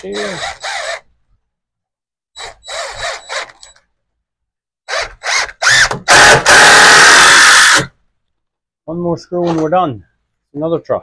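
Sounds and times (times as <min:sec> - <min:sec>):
drill driving screws into wood: 0:00.0 - 0:01.1, 0:02.4 - 0:03.8, 0:04.8 - 0:08.0.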